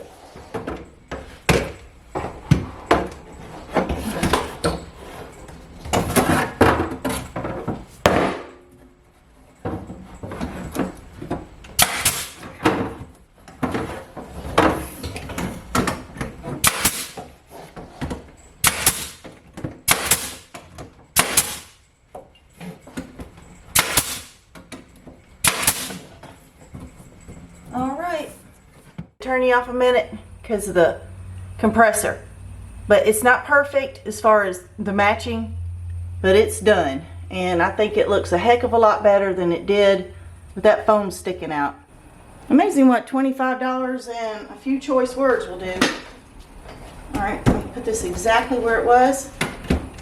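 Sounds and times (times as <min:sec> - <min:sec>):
pneumatic nail gun firing: 0:11.8 - 0:12.6, 0:16.6 - 0:17.3, 0:18.6 - 0:21.8, 0:23.7 - 0:24.4, 0:25.4 - 0:26.1.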